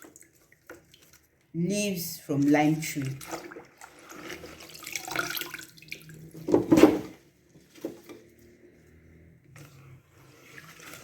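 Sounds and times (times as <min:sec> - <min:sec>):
water splashing and dripping: 0:00.0 - 0:06.5.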